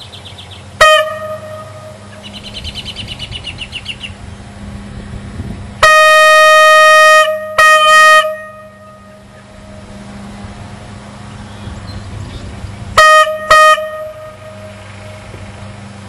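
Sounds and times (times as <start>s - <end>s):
railroad air horn blasts: 0.8s - 2.4s, 5.7s - 10.7s, 12.9s - 15.5s.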